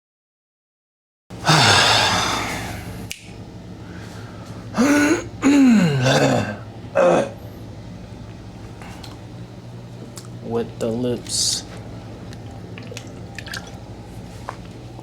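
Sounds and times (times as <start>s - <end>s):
person sighing: 1.4s - 2.9s.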